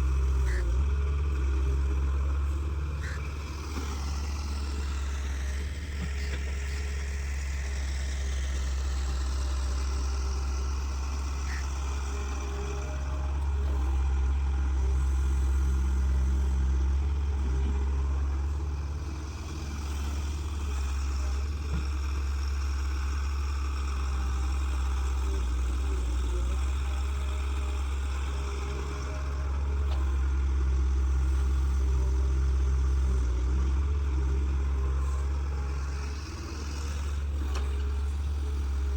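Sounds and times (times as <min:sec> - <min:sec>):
excavator diesel engine humming: 0:00.0 - 0:38.9.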